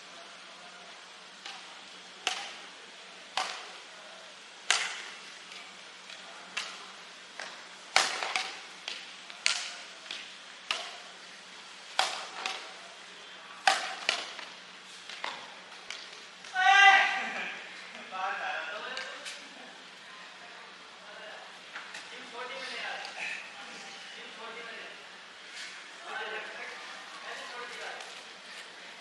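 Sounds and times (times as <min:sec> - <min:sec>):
rackets hitting shuttlecock: 0:01.4 - 0:02.7, 0:03.3 - 0:03.8, 0:04.6 - 0:11.2, 0:11.9 - 0:12.8, 0:13.6 - 0:16.6.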